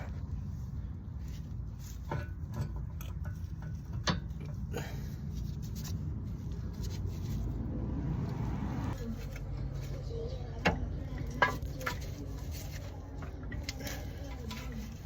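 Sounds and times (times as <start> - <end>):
low rumble: 6.0 - 11.5.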